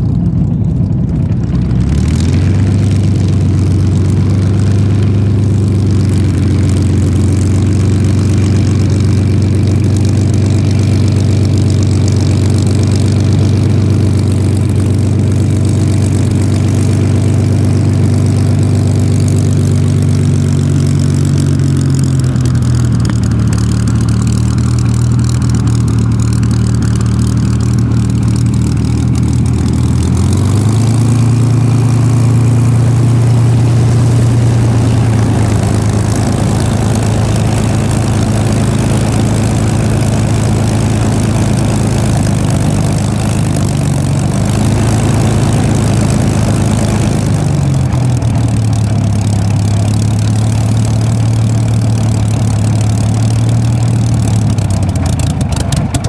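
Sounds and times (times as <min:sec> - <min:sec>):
propeller aircraft engine running: 0:00.0 - 0:56.0.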